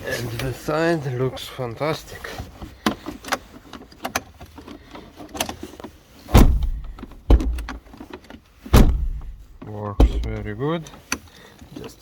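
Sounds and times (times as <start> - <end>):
car door thumping shut: 6.3 - 7.9, 8.7 - 10.5
door handle clicks: 6.4 - 7.8.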